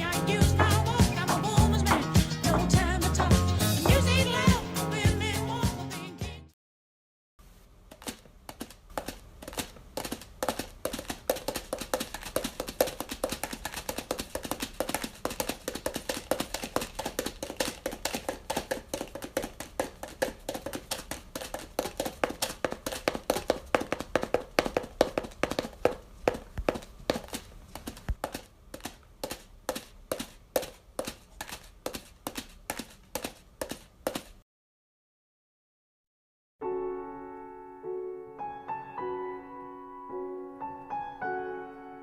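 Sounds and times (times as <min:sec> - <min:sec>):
rapid hollow tapping: 0:08.0 - 0:34.3.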